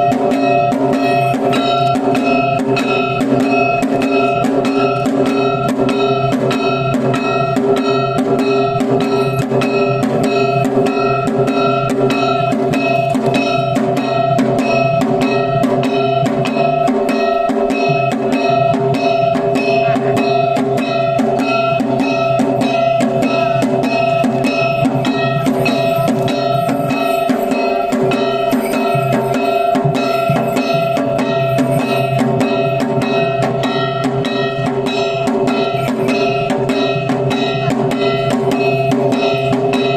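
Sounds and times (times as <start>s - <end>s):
drums beaten in fast rhythm: 0.0s - 39.9s
ringing pitched tones: 0.0s - 39.9s.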